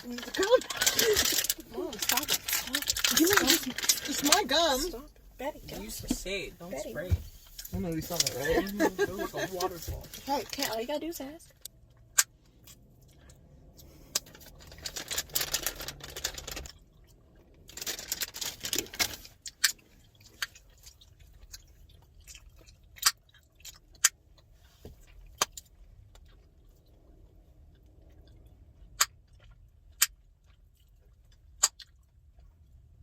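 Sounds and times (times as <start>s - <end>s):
smacking and chewing: 11.7s - 33.0s
chewing gum snapping: 19.4s - 32.8s.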